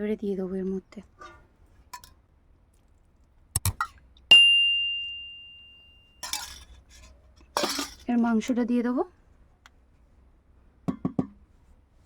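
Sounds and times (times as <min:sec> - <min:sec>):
vessel struck with ringing clink: 0:04.3 - 0:06.1
soft knocks of kitchen utensils: 0:10.8 - 0:11.4.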